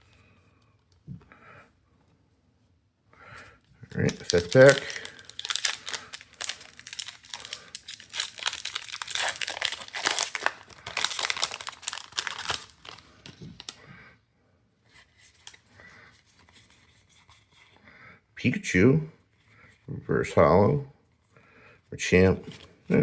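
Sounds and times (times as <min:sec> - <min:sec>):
foil wrapper tearing and crinkling: 0:04.0 - 0:13.8.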